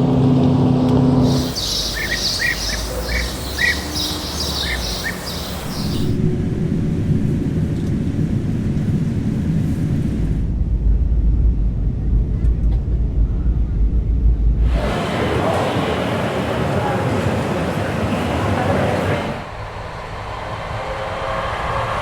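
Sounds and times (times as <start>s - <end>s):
steady low rumble: 0.0s - 15.2s
birds chirping: 1.0s - 6.2s.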